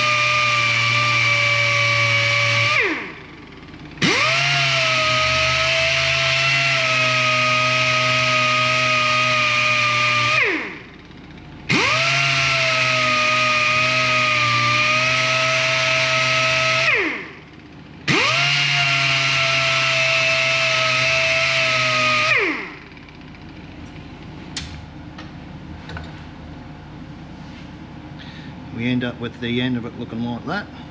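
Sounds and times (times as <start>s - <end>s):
power sander motor whining: 0.0s - 23.8s.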